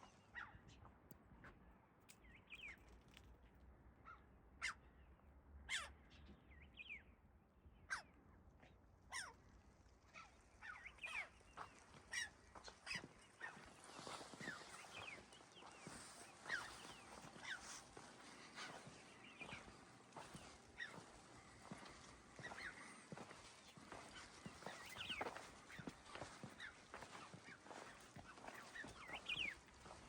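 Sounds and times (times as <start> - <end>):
birds calling: 10.6 - 30.0.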